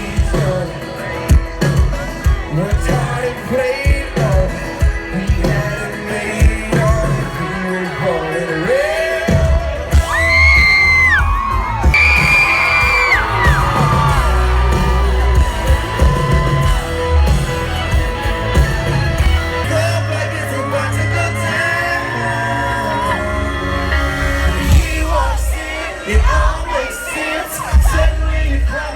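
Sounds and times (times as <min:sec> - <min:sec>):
country-pop music with singer: 0:00.0 - 0:28.9
people yelling and whooping: 0:00.0 - 0:28.9.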